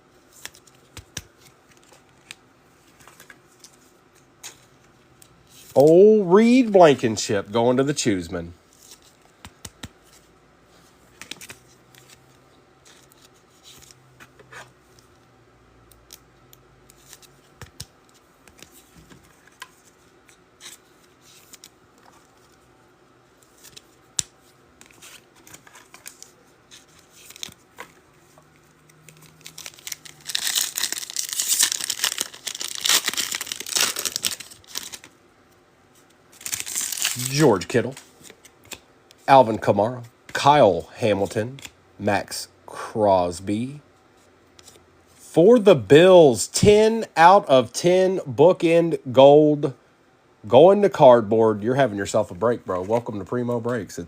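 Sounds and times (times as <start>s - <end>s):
cards clicking and tapping: 9.4s - 10.0s
wrapper tearing and crinkling: 29.1s - 35.1s, 36.4s - 37.6s.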